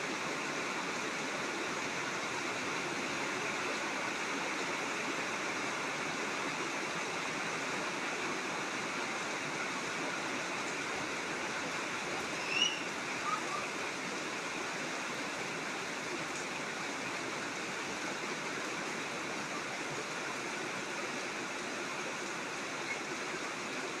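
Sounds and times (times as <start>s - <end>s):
flowing water: 0.0s - 24.0s
heavy rain: 0.0s - 24.0s
high chirps: 12.4s - 12.9s.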